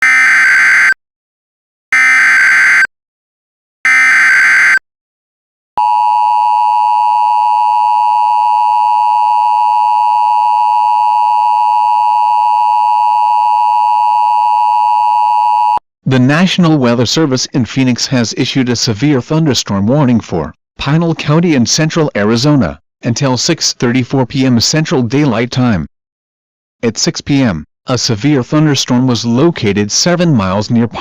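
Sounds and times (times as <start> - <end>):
piercing two-tone attention signal: 3.9 - 4.8.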